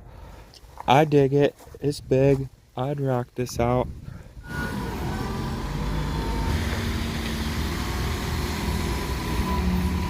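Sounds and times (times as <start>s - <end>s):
vehicle engine and road noise: 4.4s - 10.0s.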